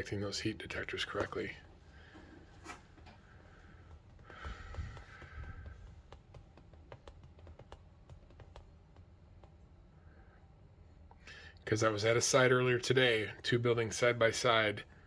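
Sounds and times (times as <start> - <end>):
short breath: 3.3 - 5.9.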